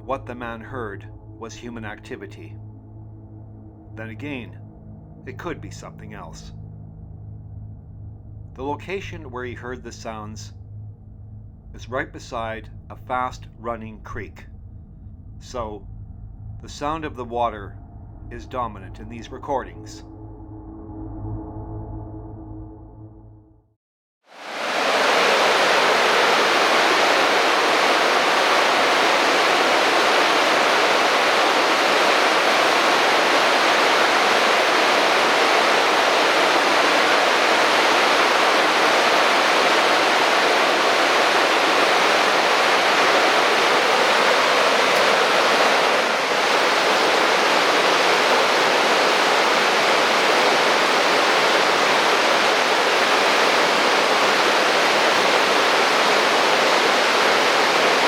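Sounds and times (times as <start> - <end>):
creek rushing: 24.3 - 58.0.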